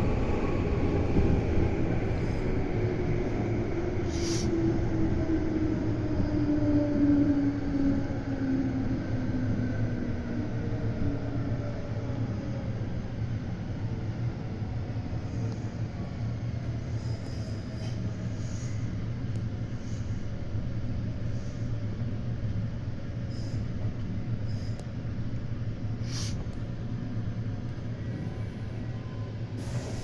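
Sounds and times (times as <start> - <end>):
train wheels rumbling on rail: 0.0 - 30.0
short hiss: 26.1 - 26.4.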